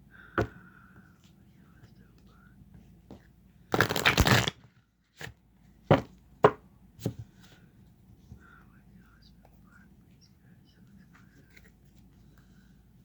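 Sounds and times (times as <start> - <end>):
cards being shuffled: 3.7 - 4.6.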